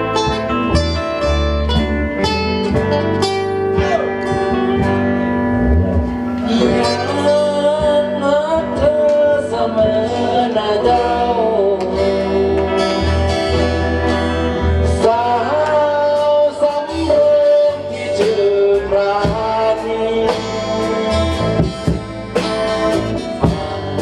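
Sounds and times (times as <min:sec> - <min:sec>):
plucked string instrument: 0:00.0 - 0:16.3.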